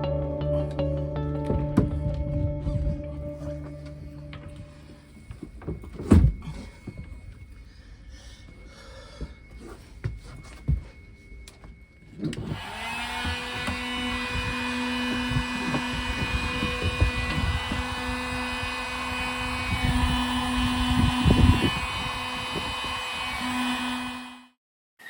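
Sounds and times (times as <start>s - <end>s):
heat gun fan humming: 12.2s - 24.5s.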